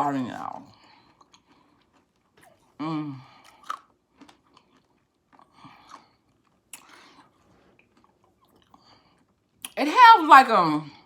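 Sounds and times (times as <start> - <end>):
chewing and crunching popcorn: 0.0 - 9.8
person humming mmm: 2.8 - 3.4.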